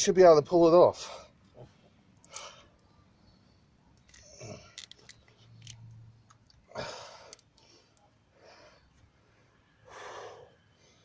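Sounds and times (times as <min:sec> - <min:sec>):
breathy exhale: 0:09.8 - 0:11.0.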